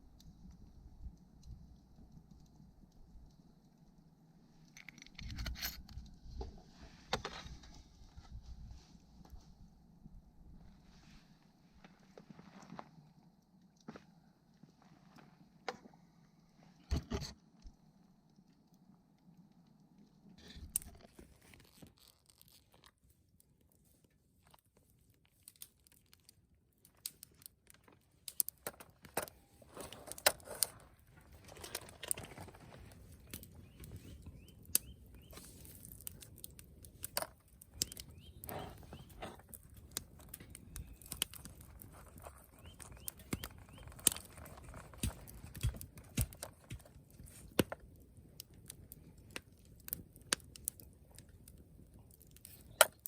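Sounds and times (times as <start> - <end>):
rustling and handling noises: 20.4 - 53.0.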